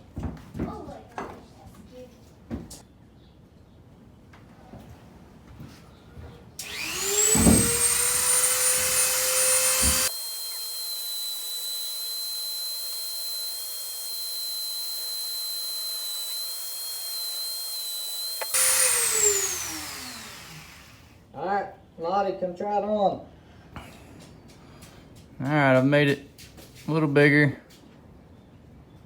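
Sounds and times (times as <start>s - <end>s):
rotary tool sanding whine: 6.6s - 21.2s.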